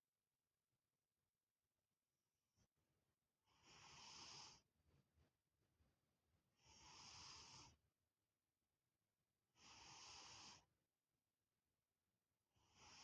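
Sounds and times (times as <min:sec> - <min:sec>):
lynx snoring: 0:03.5 - 0:04.6, 0:06.6 - 0:07.8, 0:09.6 - 0:10.7, 0:12.6 - 0:13.0.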